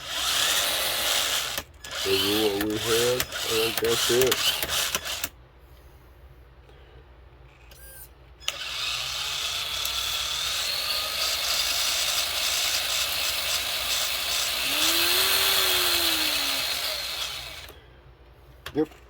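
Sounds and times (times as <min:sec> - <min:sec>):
electric motor gear whine: 0:07.8 - 0:17.8.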